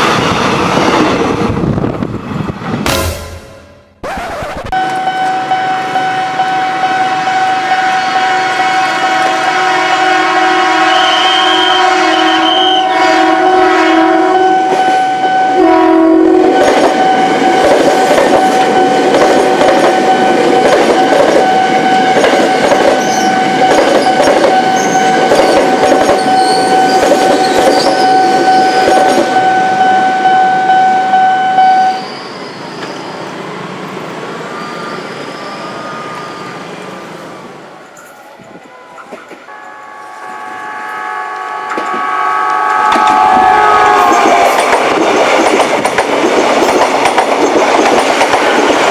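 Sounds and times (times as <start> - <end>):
train rumble: 0.0 - 11.7, 13.4 - 31.2, 35.4 - 48.9
train horn blast: 2.9 - 17.6, 27.9 - 32.0, 38.6 - 44.9
train wheels clattering over rail joints: 42.9 - 48.9.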